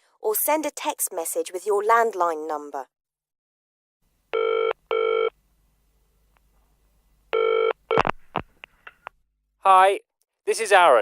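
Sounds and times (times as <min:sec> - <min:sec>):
telephone ringing: 0:04.4 - 0:05.3, 0:07.4 - 0:08.1.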